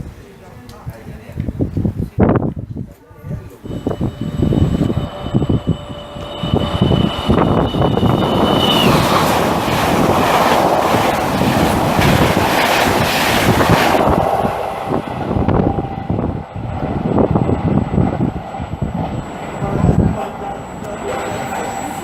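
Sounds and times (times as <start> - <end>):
train wheel and rail noise: 0.0 - 22.0
high tone dropping in pitch: 3.6 - 11.2.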